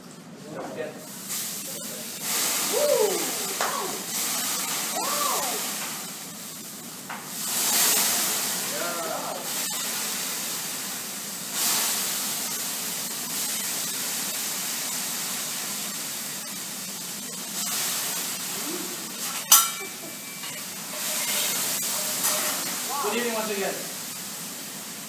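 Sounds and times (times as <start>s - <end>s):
show flame hissing: 0.3s - 25.0s.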